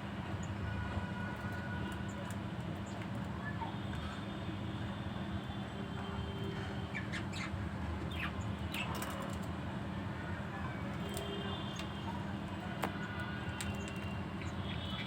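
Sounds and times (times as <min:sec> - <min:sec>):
budgerigars chirping and squawking: 0:06.9 - 0:09.1.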